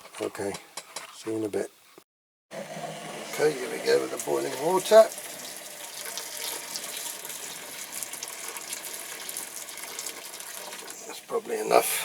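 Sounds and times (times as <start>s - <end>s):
water pouring into container: 2.5s - 11.2s.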